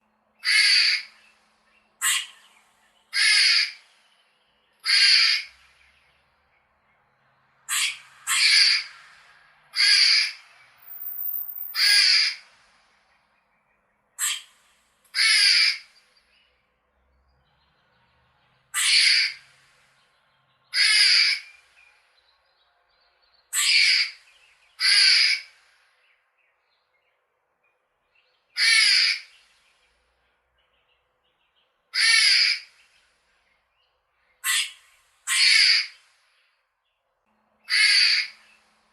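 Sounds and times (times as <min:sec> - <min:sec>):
squirrel chirping: 0:10.8 - 0:12.0.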